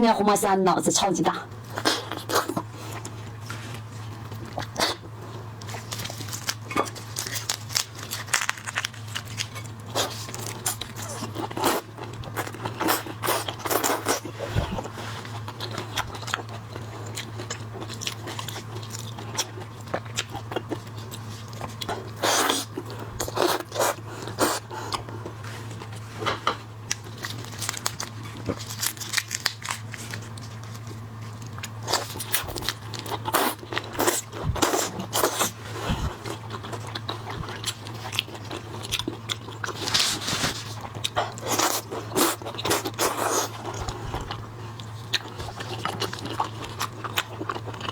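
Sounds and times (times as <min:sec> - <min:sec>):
steady low hum: 0:00.0 - 0:47.9
crunching and chewing shells: 0:01.6 - 0:47.9.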